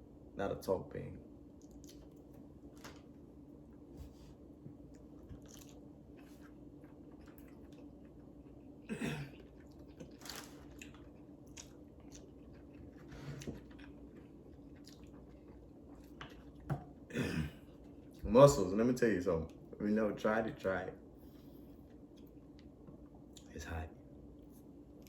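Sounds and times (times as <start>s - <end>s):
person chewing with wet smacks: 1.5s - 2.5s, 4.6s - 8.8s, 9.4s - 17.0s.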